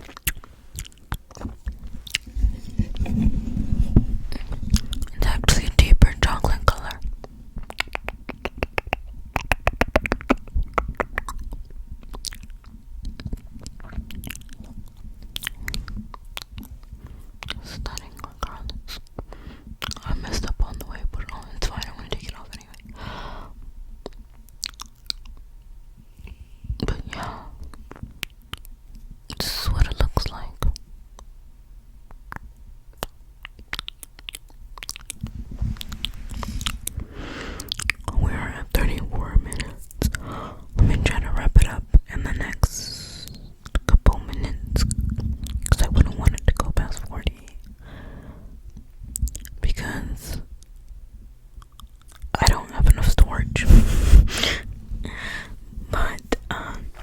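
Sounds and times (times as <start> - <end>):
low rumbling noise: 1.5 - 7.2, 35.1 - 39.6, 52.3 - 57.0
wet lip smacks: 7.6 - 11.5
wet lip smacks and clicks: 7.6 - 14.5, 24.0 - 25.4, 32.3 - 35.3, 51.6 - 53.1.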